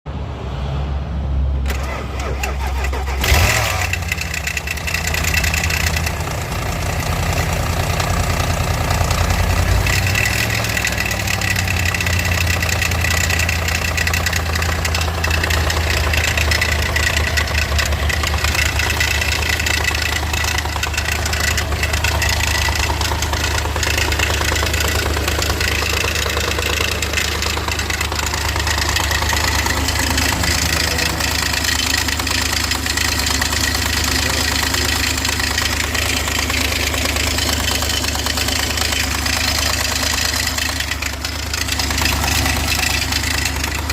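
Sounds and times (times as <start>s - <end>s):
engine idling with knocking: 1.7s - 43.9s.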